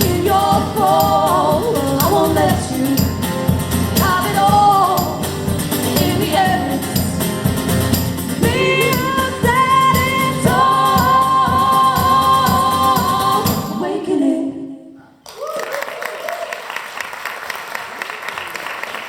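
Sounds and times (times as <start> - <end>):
live band music with singing: 0.0 - 14.7.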